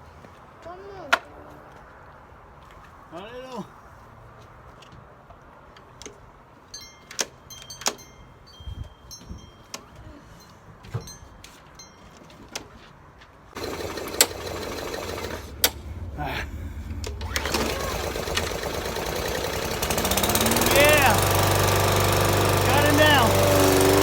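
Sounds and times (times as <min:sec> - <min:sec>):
lawn mower engine running: 0:13.6 - 0:24.0.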